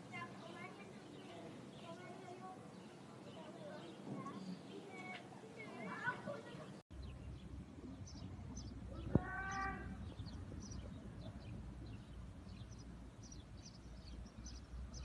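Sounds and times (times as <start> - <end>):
small birds chirping: 0.0 - 15.0
low background rumble: 6.9 - 15.0.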